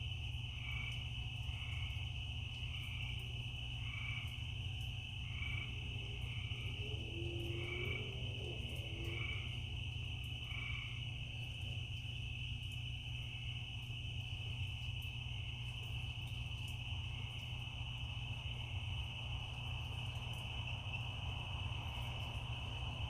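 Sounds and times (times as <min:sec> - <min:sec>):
crickets trilling: 0:00.0 - 0:23.0
low steady hum: 0:00.0 - 0:23.0
repeating frog call: 0:05.2 - 0:11.1
low warbling call: 0:05.6 - 0:09.8.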